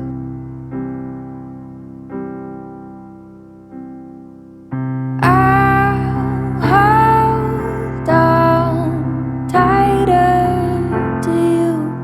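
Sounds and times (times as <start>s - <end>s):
slow piano chords: 0.0s - 12.0s
sliding sustained melody line: 5.2s - 12.0s.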